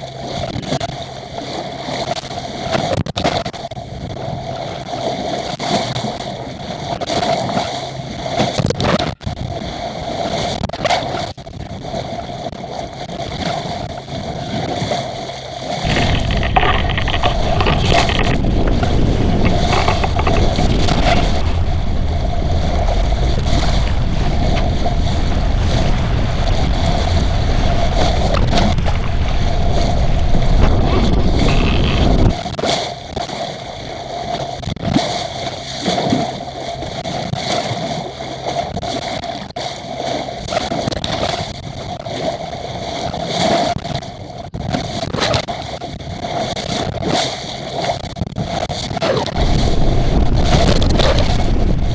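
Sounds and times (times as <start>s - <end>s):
wind rumble on microphone: 0.0s - 39.6s, 40.3s - 51.9s
water rushing along hull: 0.0s - 51.9s
faint steady hum: 15.9s - 32.4s, 49.3s - 51.9s.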